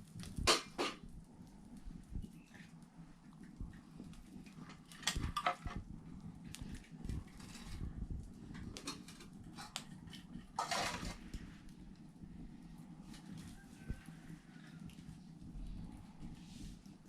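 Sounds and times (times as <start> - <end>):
pots and utensils clattering: 0.4 - 1.0, 4.9 - 5.8, 8.8 - 9.8, 10.5 - 11.3.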